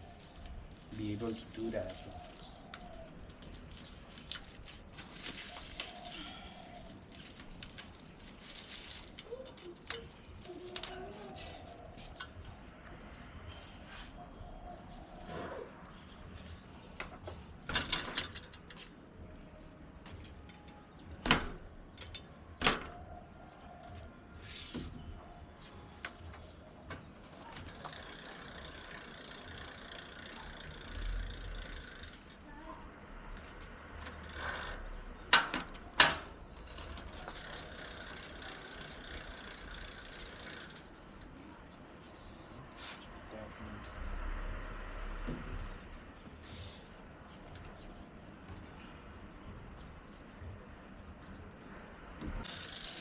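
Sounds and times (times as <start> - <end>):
bike freewheel ratcheting: 0.4 - 10.9, 17.7 - 18.7, 27.3 - 32.5, 34.0 - 35.5, 36.1 - 41.4, 52.4 - 53.0
knocks and clicks of bike handling: 16.9 - 19.0, 20.0 - 23.1, 26.0 - 32.3, 33.4 - 41.3.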